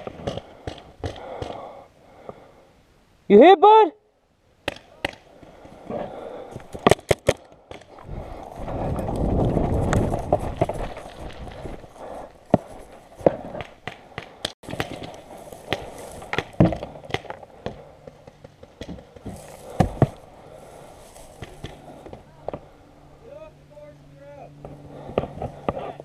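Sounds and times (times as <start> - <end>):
heavy rustling through woods: 7.9 - 23.3.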